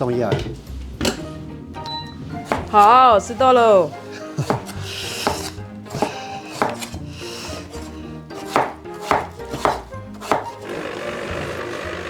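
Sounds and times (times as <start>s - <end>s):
knife chopping on cutting board: 2.4s - 11.6s.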